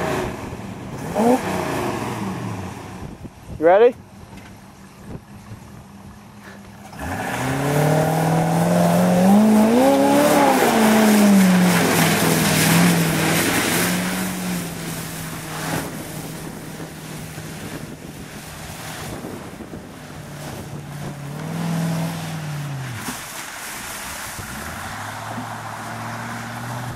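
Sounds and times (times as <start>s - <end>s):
truck engine revving: 0.0s - 3.2s, 6.8s - 26.9s
tyres splashing mud: 6.4s - 26.9s.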